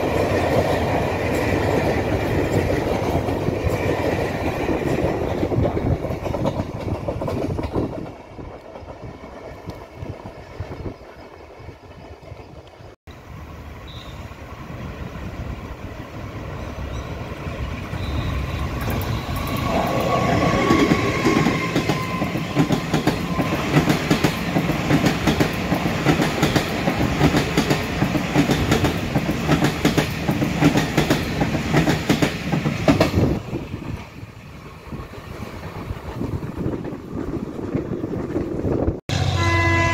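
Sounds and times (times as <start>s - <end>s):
wheels clicking over rail joints: 0.0s - 13.0s
train passing: 0.0s - 39.9s.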